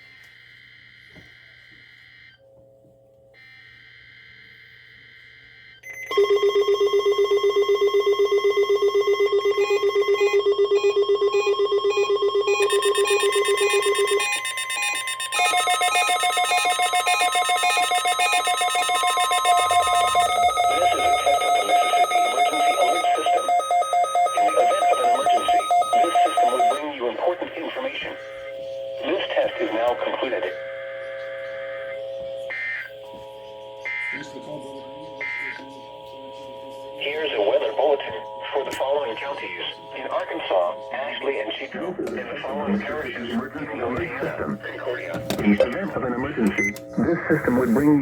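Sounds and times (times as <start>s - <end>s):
pulsing electronic alert tones: 6.1s - 26.8s.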